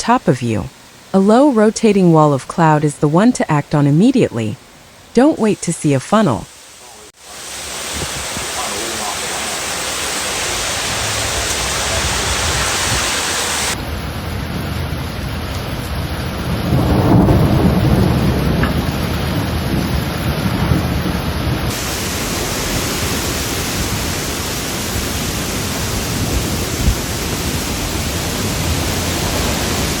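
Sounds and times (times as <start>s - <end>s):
heavy rain falling: 5.4s - 30.0s
thunder rumbling: 15.8s - 21.8s.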